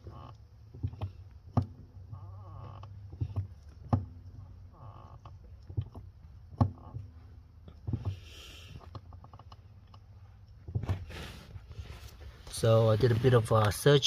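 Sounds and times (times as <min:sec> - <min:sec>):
brake pedal knocking and clicking: 0:00.0 - 0:12.8.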